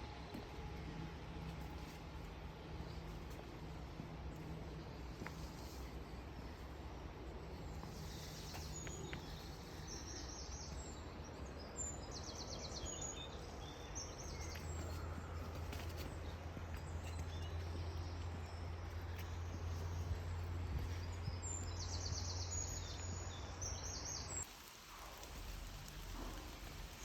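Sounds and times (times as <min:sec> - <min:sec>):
low outdoor rumble: 0:00.0 - 0:27.0
small birds chirping: 0:07.5 - 0:27.0.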